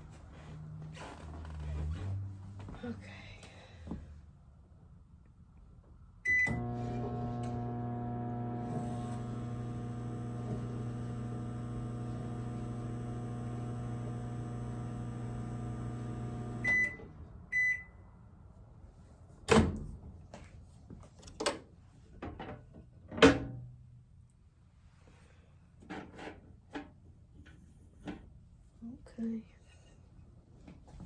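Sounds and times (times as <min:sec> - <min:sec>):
microwave oven humming: 0:06.3 - 0:17.3.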